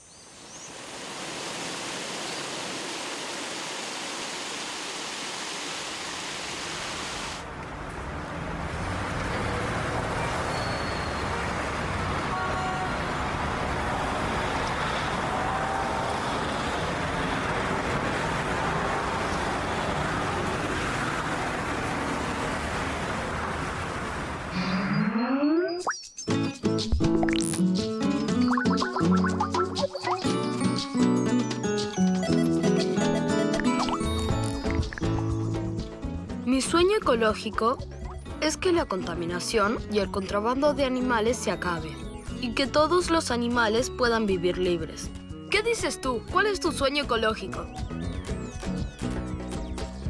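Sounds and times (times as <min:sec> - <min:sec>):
road traffic noise: 0:00.7 - 0:24.9
faint car horns: 0:12.1 - 0:13.4.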